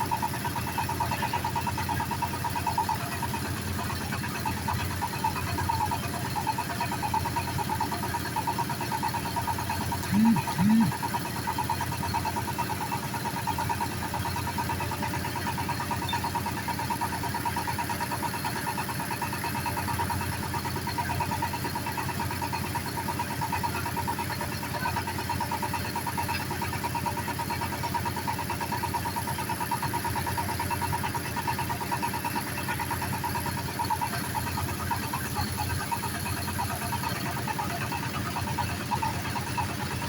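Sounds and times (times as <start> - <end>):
drilling machine engine running: 0.1 - 13.2.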